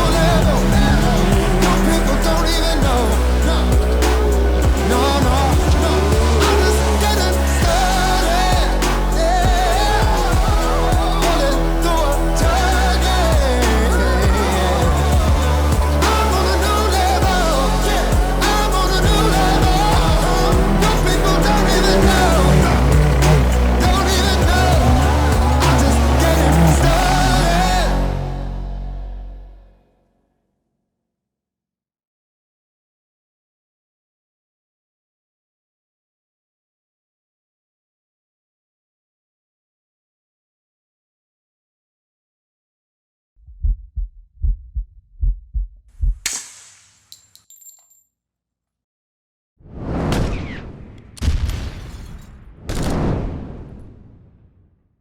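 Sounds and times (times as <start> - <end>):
deep heartbeat-like thumps: 0.0 - 4.0, 4.6 - 6.4, 9.4 - 11.2, 14.2 - 16.0, 19.0 - 27.2, 43.4 - 46.3
drums: 0.0 - 28.0
song with sung vocal: 0.0 - 29.5
heavy steady bass: 0.0 - 29.6
loud noisy burst: 16.0 - 27.9.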